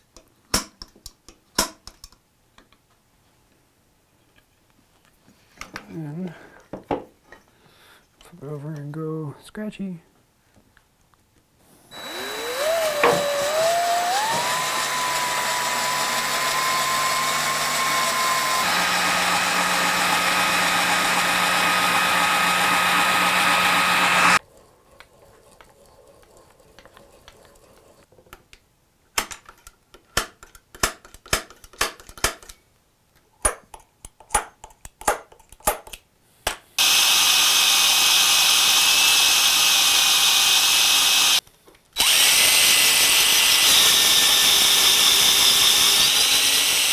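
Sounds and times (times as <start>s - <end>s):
power tool motor whining: 11.9s - 24.4s, 36.8s - 41.4s, 42.0s - 46.9s.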